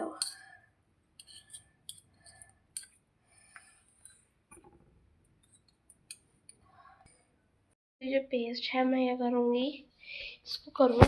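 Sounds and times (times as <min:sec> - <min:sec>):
spoon scraping in bowl: 0:01.2 - 0:03.0.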